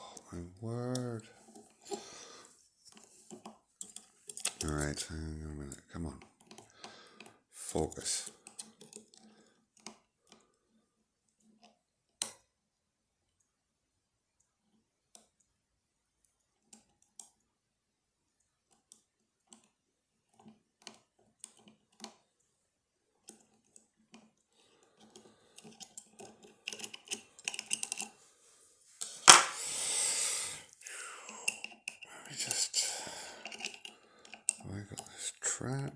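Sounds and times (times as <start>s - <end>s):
lock picks clicking and scraping: 2.9s - 5.0s, 5.7s - 10.4s, 23.2s - 28.2s, 31.4s - 35.3s.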